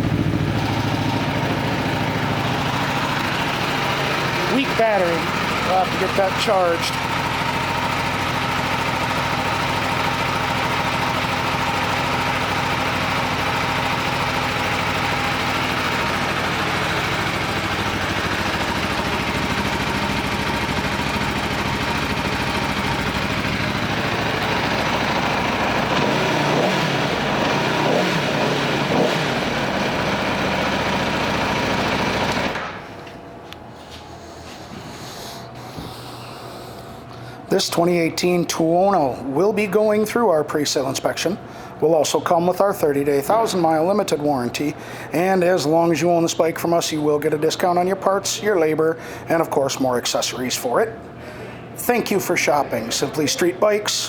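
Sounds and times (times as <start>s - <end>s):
motorcycle engine idling: 0.0s - 32.7s.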